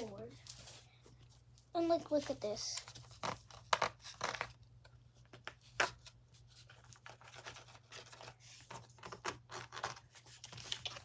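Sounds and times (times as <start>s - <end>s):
plastic objects crackling and clicking: 1.5s - 6.1s, 6.7s - 11.0s.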